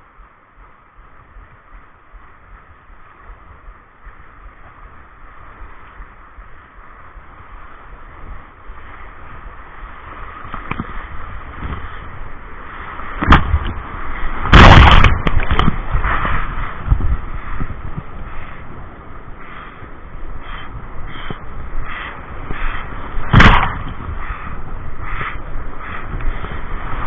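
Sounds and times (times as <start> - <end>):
rushing river water: 0.0 - 27.0
sharp knocks: 23.3 - 24.0.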